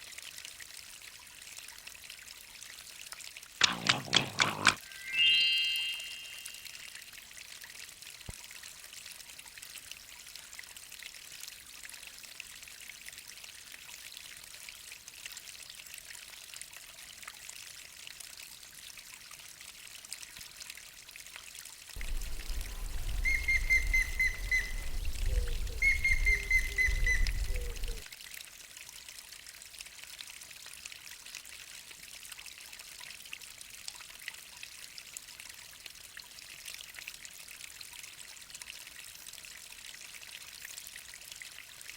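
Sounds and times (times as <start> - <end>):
waterfall splashing and trickling: 0.0 - 41.9
bird trilled calls: 3.6 - 6.8, 22.0 - 28.0
wind rumble on microphone: 22.0 - 28.0.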